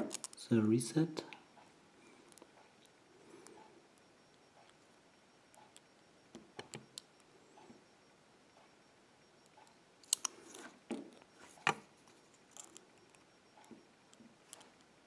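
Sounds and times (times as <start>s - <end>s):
lock pick clicking and scraping: 0.0s - 0.4s, 10.0s - 11.8s, 12.4s - 12.9s.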